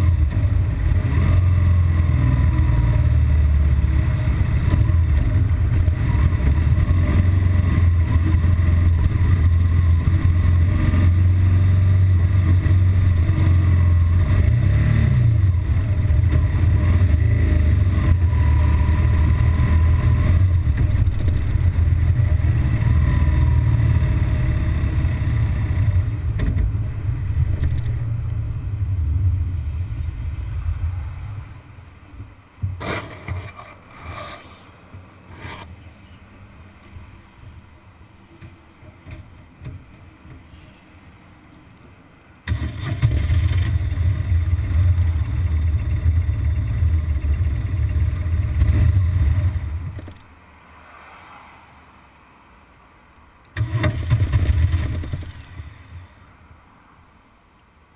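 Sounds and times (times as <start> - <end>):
motorcycle engine idling roughly: 42.5 - 48.8, 53.6 - 55.6.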